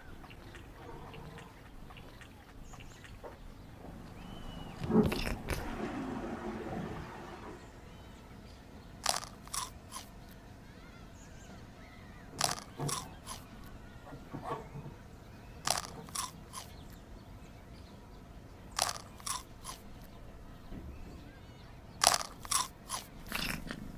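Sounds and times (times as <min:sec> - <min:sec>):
cat chewing crunchy food: 0:04.8 - 0:05.6, 0:09.0 - 0:10.2, 0:12.4 - 0:13.5, 0:15.7 - 0:16.9, 0:18.8 - 0:20.0, 0:22.0 - 0:23.9.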